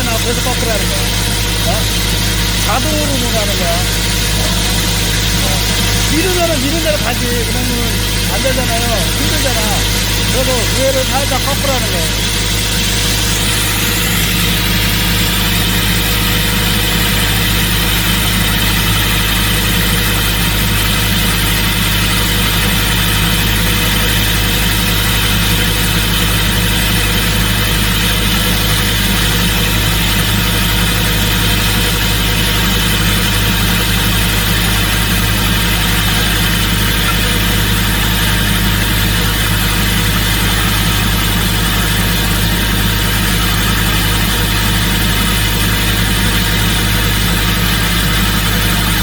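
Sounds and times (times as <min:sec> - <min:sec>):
hydraulic rock drill droning: 0:00.0 - 0:49.0.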